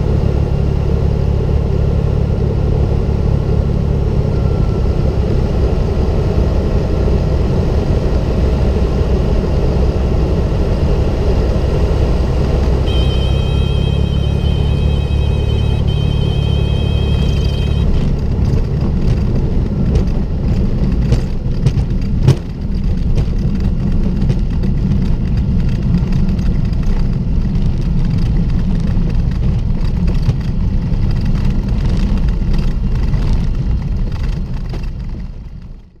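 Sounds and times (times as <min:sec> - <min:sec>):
airplane engine rumble: 0:00.0 - 0:36.0
warbling warning tone: 0:12.8 - 0:18.2
knocks and jolts of plane: 0:18.0 - 0:35.6.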